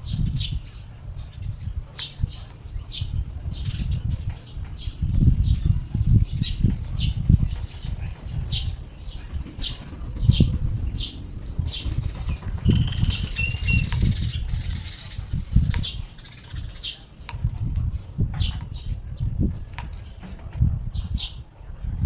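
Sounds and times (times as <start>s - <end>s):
bird wings flapping: 6.8s - 17.8s, 19.6s - 20.8s.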